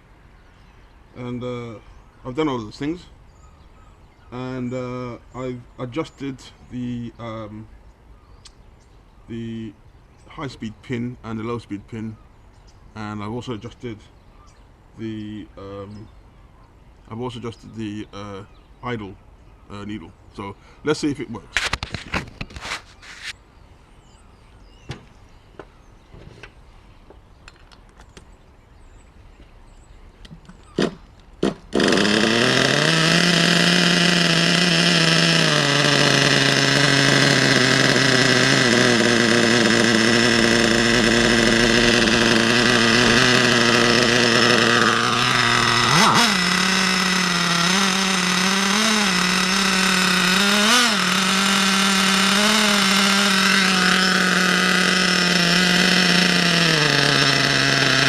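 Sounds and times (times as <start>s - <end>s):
small engine pops: 21.5s - 23.4s, 24.8s - 28.3s, 30.2s - 58.0s
small engine high buzz: 30.7s - 58.0s.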